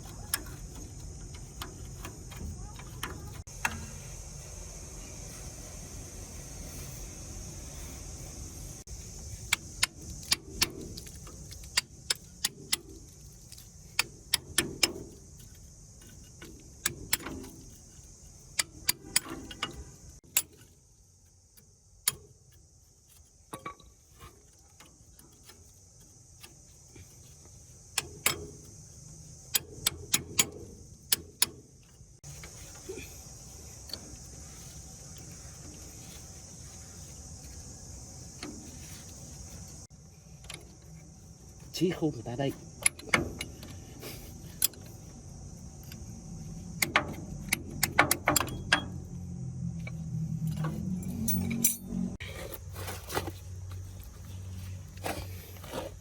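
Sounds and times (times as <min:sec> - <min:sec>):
insects hissing: 0:00.0 - 0:56.0
metal tools clinking: 0:50.5 - 0:53.3.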